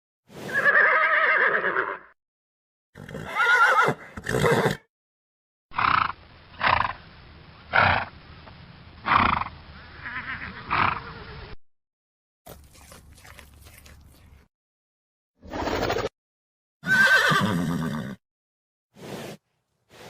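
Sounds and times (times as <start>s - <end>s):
horse whinnying: 0.4s - 2.1s, 3.0s - 4.8s, 16.8s - 18.2s.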